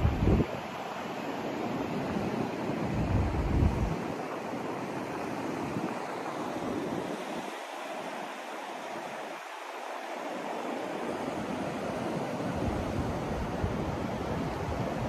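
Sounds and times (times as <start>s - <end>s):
rushing white noise: 0.0s - 0.7s.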